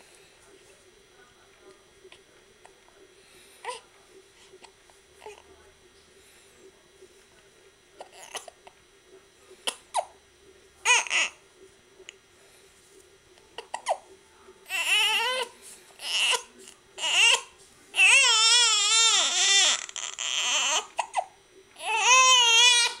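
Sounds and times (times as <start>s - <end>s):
baby crying: 10.9s - 11.4s, 14.7s - 23.0s.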